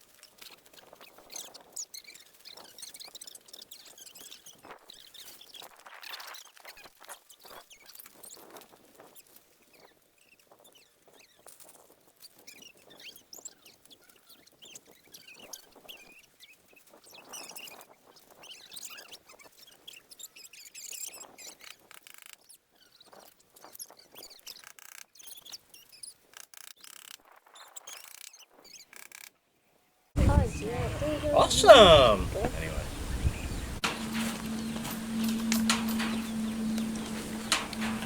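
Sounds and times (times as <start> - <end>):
small birds chirping: 30.2 - 38.0
light clicks and taps: 32.4 - 38.0.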